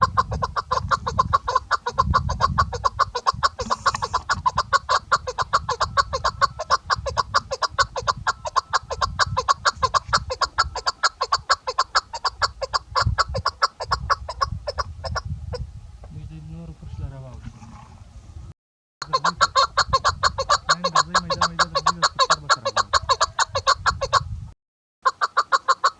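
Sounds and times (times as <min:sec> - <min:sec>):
partridge clucking: 0:00.0 - 0:12.8.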